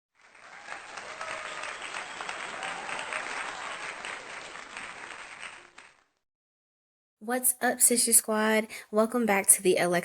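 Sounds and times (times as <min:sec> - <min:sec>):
crowd applause: 0:00.2 - 0:06.2.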